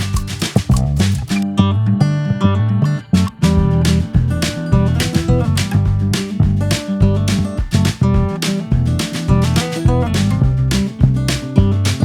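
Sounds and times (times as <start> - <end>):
bass line: 0.0 - 2.0, 3.1 - 12.0
strummed acoustic guitar: 0.0 - 12.0.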